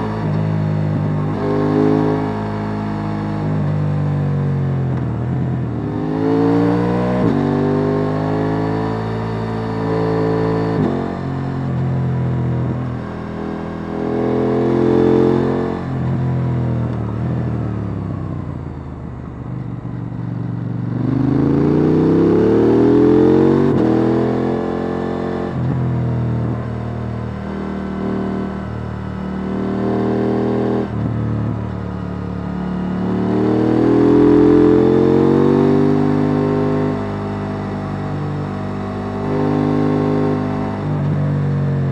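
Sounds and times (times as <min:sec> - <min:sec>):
motorcycle engine revving: 0:19.6 - 0:41.9.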